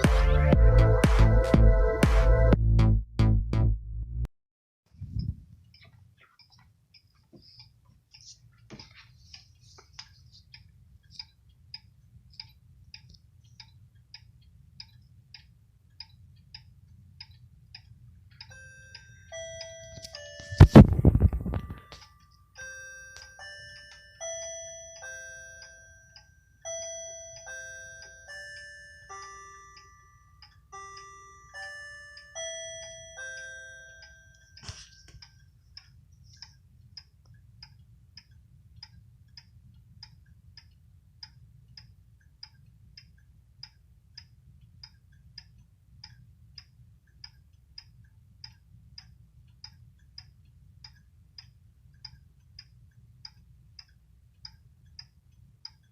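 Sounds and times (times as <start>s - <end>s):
pendulum clock ticking: 5.6s - 55.9s
clock chime melody: 18.4s - 20.9s, 21.6s - 35.1s.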